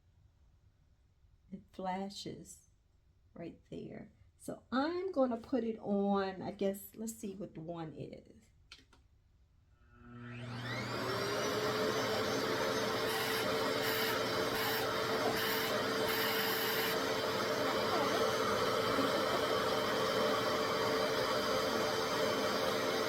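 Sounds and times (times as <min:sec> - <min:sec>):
hair dryer motor whirring: 0:10.0 - 0:23.0
faint high whine: 0:11.1 - 0:20.9.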